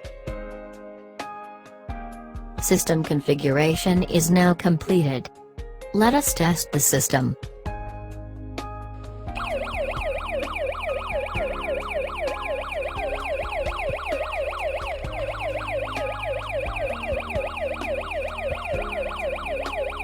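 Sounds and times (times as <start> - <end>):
alarm siren rising whoop: 9.4 - 20.0.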